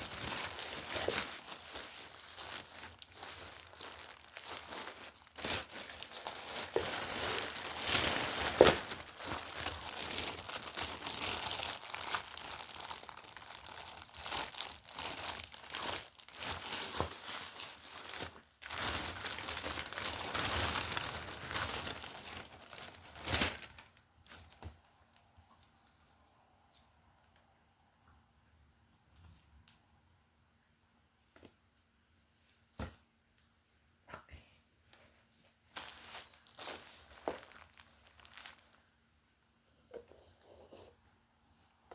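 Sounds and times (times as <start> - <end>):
plastic ripping: 0.0 - 25.1, 35.8 - 38.8
plastic packaging crinkling: 0.0 - 25.3, 35.7 - 38.9.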